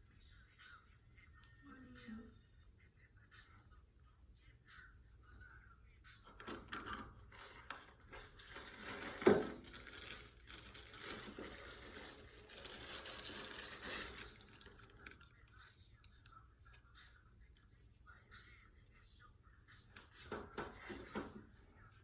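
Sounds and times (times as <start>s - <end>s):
rustling and handling noise: 6.2s - 17.7s, 19.6s - 22.0s.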